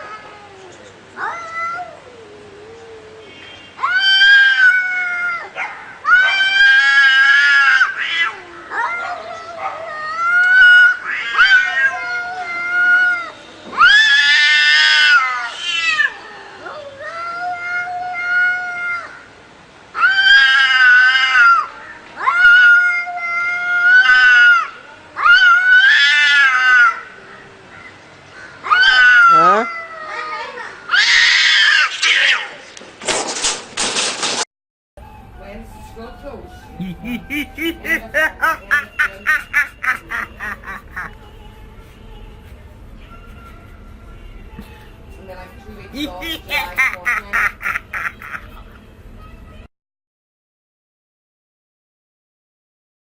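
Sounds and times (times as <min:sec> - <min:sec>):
cats yowling: 0:00.0 - 0:19.2, 0:20.0 - 0:27.2, 0:28.6 - 0:32.5, 0:35.0 - 0:43.8, 0:45.9 - 0:48.8.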